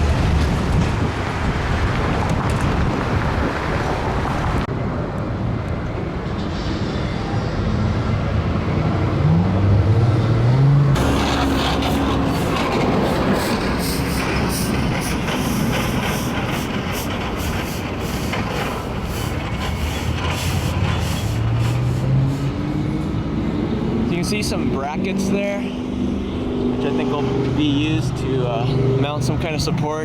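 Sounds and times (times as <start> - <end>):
rush of passing traffic: 0.0 - 30.0
vehicle engine accelerating: 7.4 - 16.8, 20.2 - 30.0.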